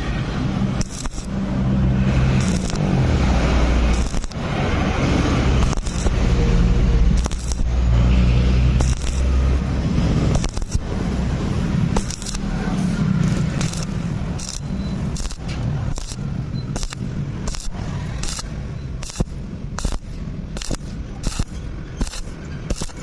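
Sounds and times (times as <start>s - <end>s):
welding arc crackling: 0.0s - 23.0s
sharp pops: 0.8s - 1.3s, 2.4s - 2.9s, 3.9s - 4.5s, 5.6s - 6.2s, 7.2s - 7.7s, 8.8s - 9.3s, 10.3s - 10.9s, 11.9s - 12.5s, 13.2s - 23.0s.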